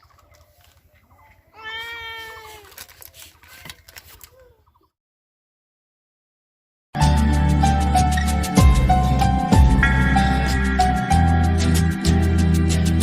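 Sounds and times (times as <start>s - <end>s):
cat meowing: 1.5s - 2.7s.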